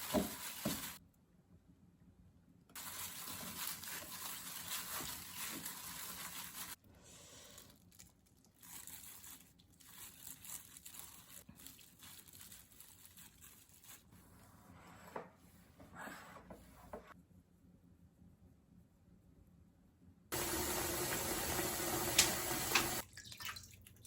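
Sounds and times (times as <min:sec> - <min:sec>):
crinkling rustling: 0:02.8 - 0:06.8, 0:07.6 - 0:14.2.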